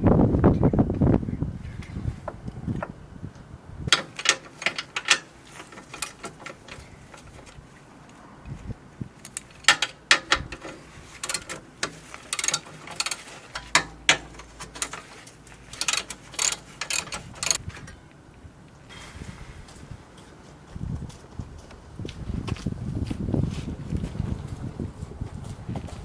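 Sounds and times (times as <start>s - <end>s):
metal tools clicking and clanking: 3.9s - 7.6s, 9.2s - 18.1s.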